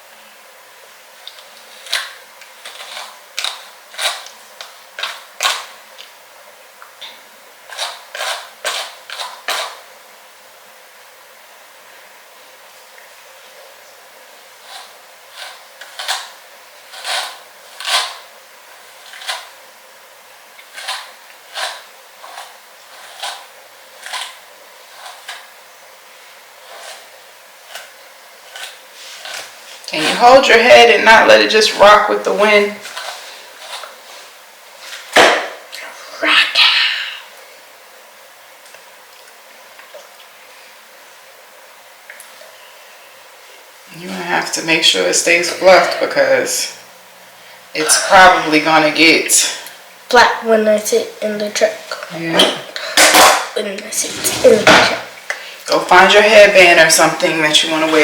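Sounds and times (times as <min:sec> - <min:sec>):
scratchy hair brush strokes: 0:14.6 - 0:19.5, 0:20.7 - 0:25.5, 0:26.6 - 0:30.5, 0:32.1 - 0:35.2, 0:53.6 - 0:55.2
brush swishing through wig hair: 0:53.9 - 0:55.2.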